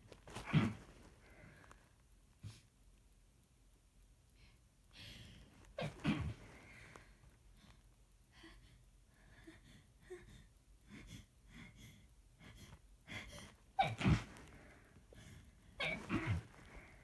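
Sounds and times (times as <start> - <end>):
person sneezing muffled: 5.8 - 6.6, 13.8 - 14.4, 15.8 - 16.6.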